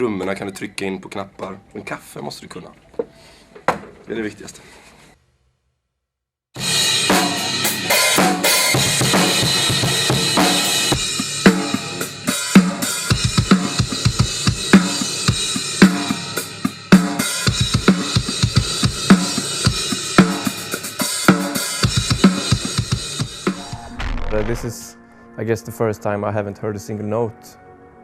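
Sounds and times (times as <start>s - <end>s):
kick and snare drum hits: 23.5s - 24.8s.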